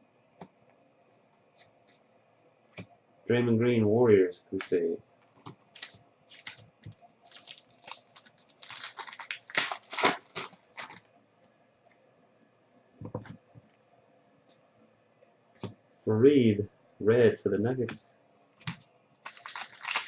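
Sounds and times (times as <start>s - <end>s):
card wrapper crinkling and tearing: 5.7s - 6.6s, 7.3s - 11.0s, 19.2s - 20.0s.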